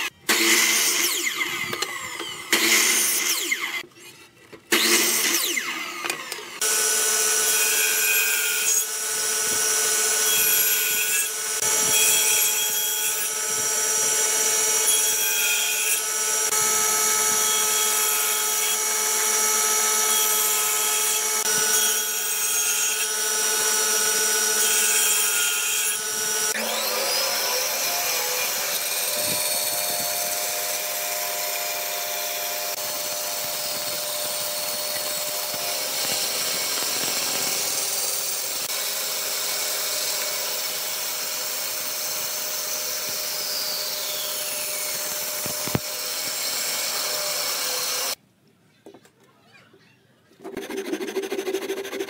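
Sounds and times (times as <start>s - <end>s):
power tool motor whine: 26.0s - 48.2s.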